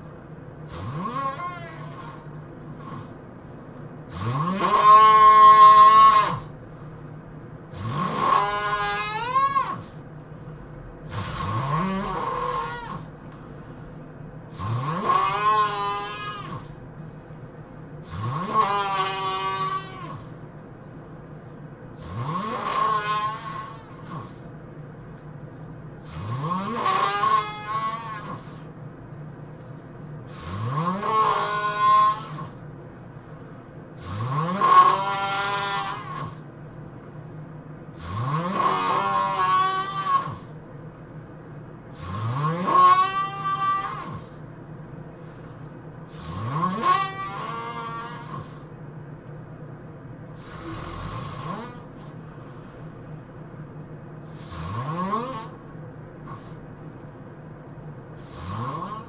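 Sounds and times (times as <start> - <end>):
person snoring: 0.7 - 3.2, 4.1 - 6.5, 7.7 - 9.9, 11.0 - 13.1, 14.5 - 16.8, 18.0 - 20.2, 22.0 - 24.4, 26.0 - 28.7, 30.3 - 32.6, 34.0 - 36.4, 38.0 - 40.4, 46.1 - 48.6, 50.4 - 52.6, 54.3 - 55.6, 58.2 - 59.0.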